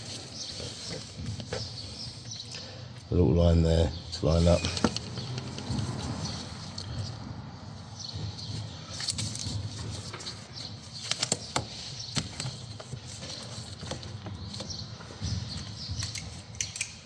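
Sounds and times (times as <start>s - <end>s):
car parts clicking and tapping: 4.5s - 7.2s, 8.0s - 17.0s.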